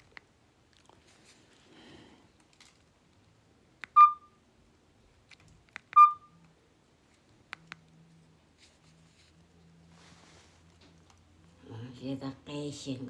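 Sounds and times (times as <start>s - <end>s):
mobile phone beeps: 3.9s - 4.4s, 6.0s - 6.4s
phone clicks: 5.7s - 6.3s.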